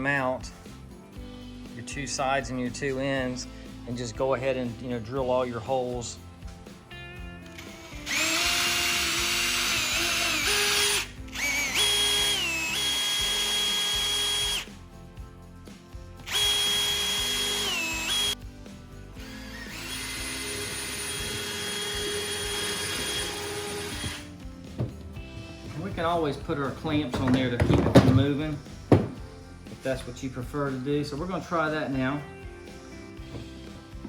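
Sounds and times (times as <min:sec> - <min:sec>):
electric drill whining: 0:07.5 - 0:14.7, 0:16.2 - 0:18.4, 0:19.2 - 0:24.4.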